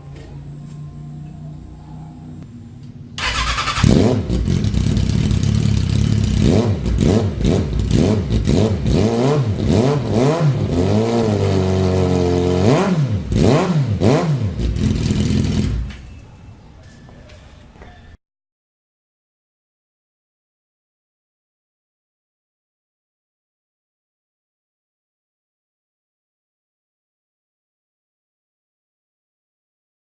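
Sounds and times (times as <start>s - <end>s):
motorcycle engine revving: 0.0s - 16.2s.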